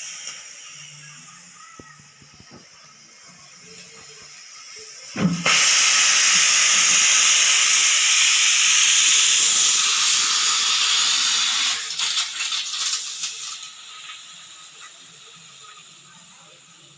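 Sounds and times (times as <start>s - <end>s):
pressure cooker whistle hissing: 3.6s - 14.8s.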